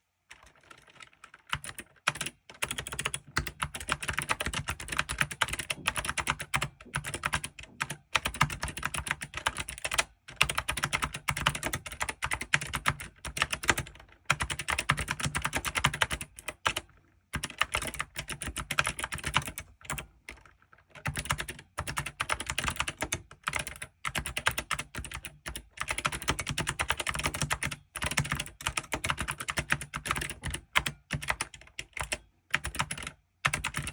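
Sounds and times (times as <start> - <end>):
keyboard keys clacking: 0.5 - 13.8.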